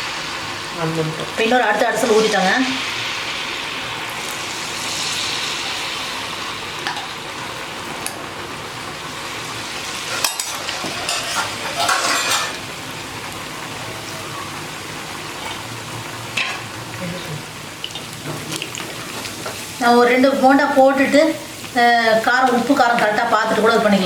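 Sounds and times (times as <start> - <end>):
food deep-frying in oil: 0.0 - 24.0
metal utensil scraping pan: 10.1 - 12.6, 16.4 - 16.7.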